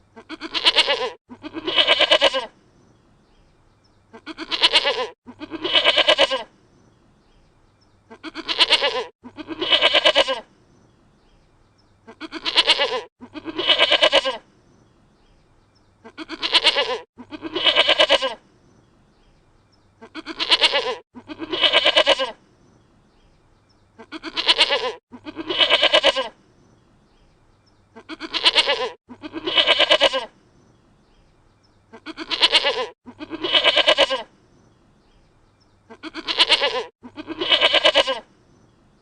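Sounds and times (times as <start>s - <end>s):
goat bleating: 0.2s - 2.5s, 4.1s - 6.5s, 8.1s - 10.5s, 12.0s - 14.4s, 16.0s - 18.4s, 20.0s - 22.4s, 24.0s - 26.4s, 28.0s - 30.3s, 31.9s - 34.3s, 35.9s - 38.3s.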